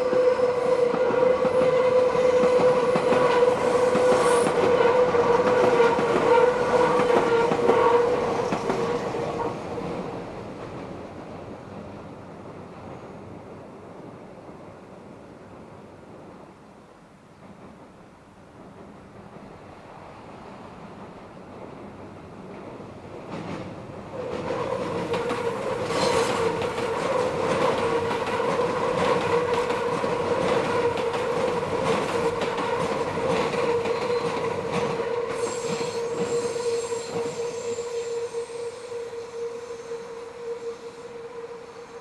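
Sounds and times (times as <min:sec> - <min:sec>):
faint high squeal: 0:00.0 - 0:07.0, 0:24.7 - 0:29.7, 0:33.6 - 0:42.0
train wheels squealing: 0:00.0 - 0:10.0, 0:24.2 - 0:42.0.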